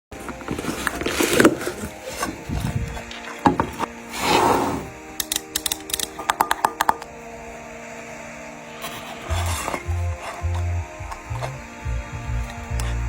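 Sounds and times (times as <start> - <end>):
soft background music: 0.1 - 13.0
packaging rustling scrape: 0.2 - 5.0
tin clicks and taps: 5.2 - 7.1.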